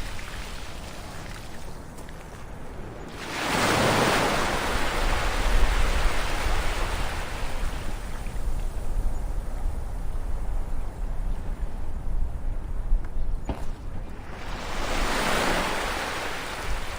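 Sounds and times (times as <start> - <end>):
low rumble of surf: 0.0 - 16.9
wave breaking on shore: 3.1 - 8.2, 14.1 - 16.9.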